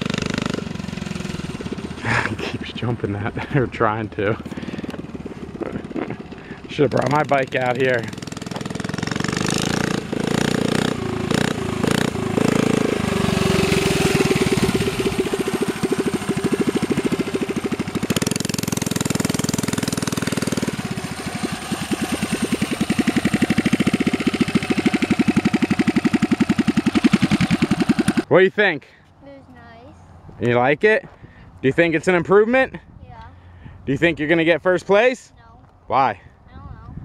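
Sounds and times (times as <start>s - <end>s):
mini bike engine: 0.0s - 28.3s.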